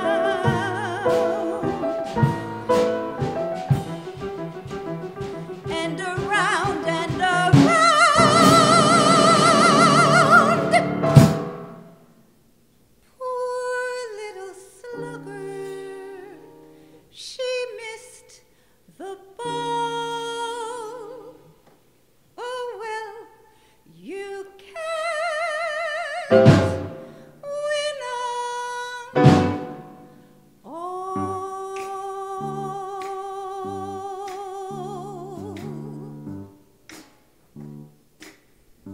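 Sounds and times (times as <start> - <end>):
musical accompaniment: 0.0 - 12.0, 26.3 - 27.2, 29.2 - 30.2, 31.2 - 38.9
sharp chords: 0.0 - 12.0
woman singing with vibrato: 0.0 - 12.1, 13.1 - 21.7, 22.4 - 36.6.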